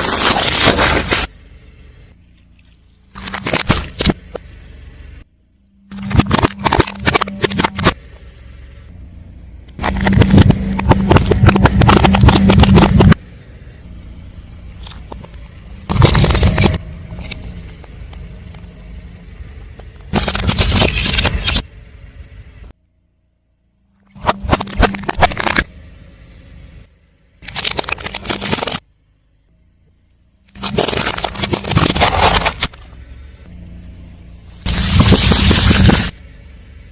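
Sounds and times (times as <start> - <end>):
tyre crushing crunchy objects: 0.0 - 1.3, 3.1 - 4.3, 9.8 - 13.2, 15.8 - 17.4, 30.6 - 32.9, 34.6 - 36.2
low engine hum: 0.8 - 36.9.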